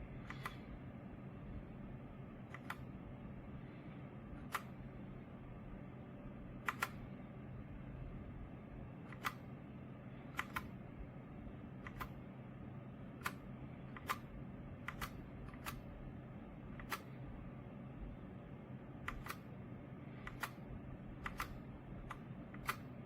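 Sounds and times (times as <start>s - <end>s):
faint low hum: 0.0s - 23.0s
mechanical keyboard key clicks: 6.6s - 7.0s, 10.3s - 10.7s, 11.8s - 12.2s, 13.2s - 15.8s, 19.0s - 19.4s, 21.2s - 22.9s.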